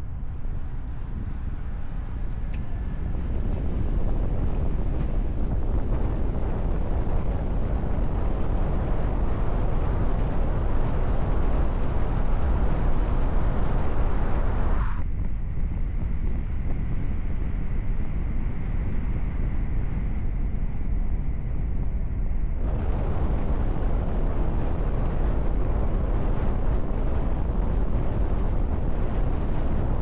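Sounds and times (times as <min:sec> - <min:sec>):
moving vehicle rumble: 0:00.0 - 0:15.0, 0:22.6 - 0:30.0
road and wind noise: 0:00.0 - 0:30.0.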